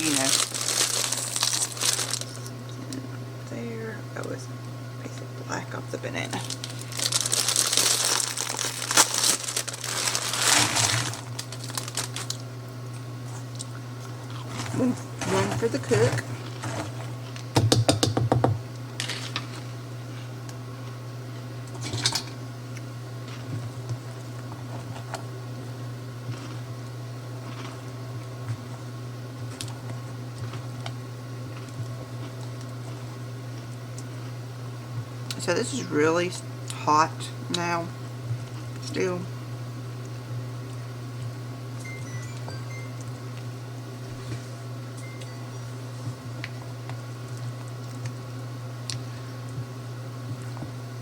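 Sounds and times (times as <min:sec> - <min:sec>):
plastic wrapper crinkling: 0:00.0 - 0:02.5, 0:06.4 - 0:12.4
steady low hum: 0:00.0 - 0:51.0
low hum: 0:41.5 - 0:48.0.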